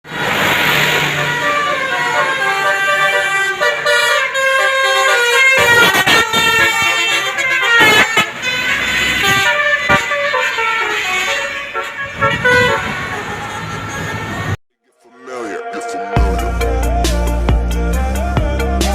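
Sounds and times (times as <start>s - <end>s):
multi-tone bus horn tune: 1.0s - 14.6s.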